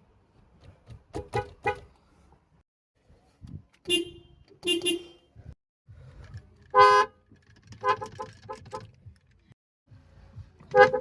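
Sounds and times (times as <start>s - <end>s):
car horn toots: 3.8s - 5.3s, 6.7s - 7.2s, 7.8s - 9.0s, 10.7s - 11.0s.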